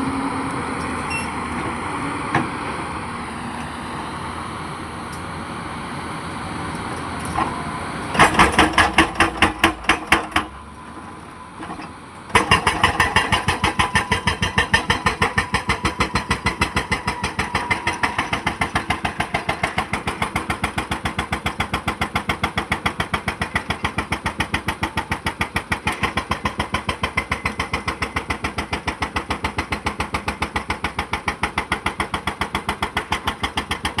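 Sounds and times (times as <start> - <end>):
diesel engine running: 0.0 - 34.0
hydraulic breaker hammering: 8.2 - 34.0.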